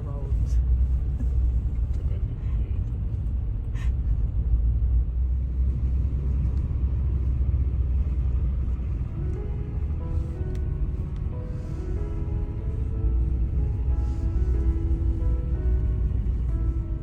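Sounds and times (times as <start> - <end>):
car driving on snowy road: 0.0 - 17.0.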